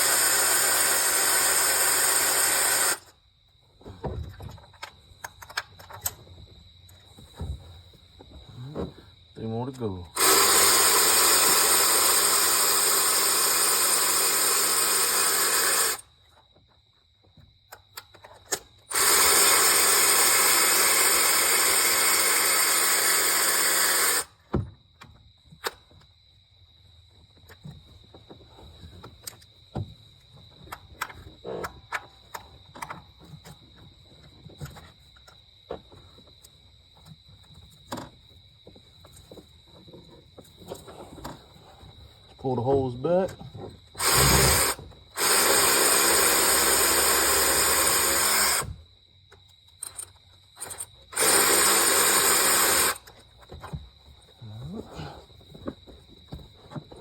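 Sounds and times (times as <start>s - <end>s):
compressed air blow gun hissing: 44.0s - 44.8s.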